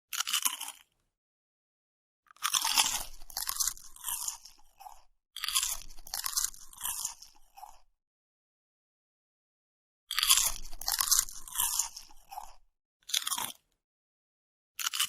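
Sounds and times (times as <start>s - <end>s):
cat crunching chips: 0.1s - 0.9s, 2.3s - 7.8s, 10.1s - 13.6s, 14.8s - 15.0s.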